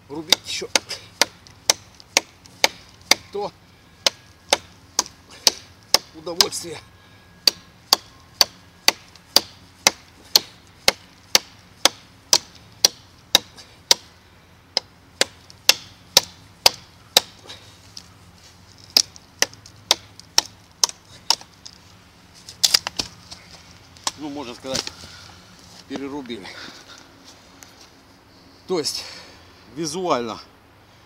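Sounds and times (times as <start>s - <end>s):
knife chopping wet branch: 0.2s - 3.4s, 4.0s - 6.6s, 7.4s - 14.1s.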